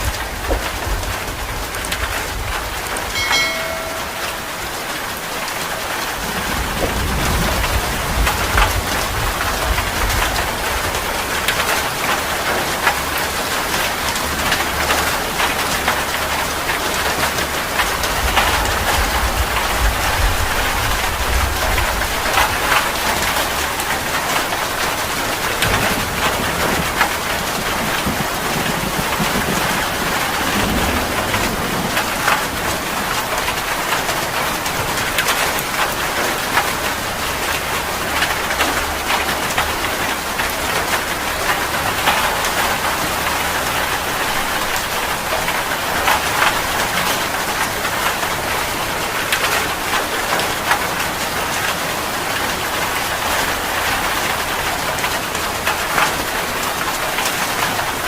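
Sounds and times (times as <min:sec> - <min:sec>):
thunder rumbling: 0:00.0 - 0:12.0, 0:17.7 - 0:39.7
heavy rain pouring: 0:00.0 - 0:58.0
raindrops pattering: 0:00.0 - 0:58.0.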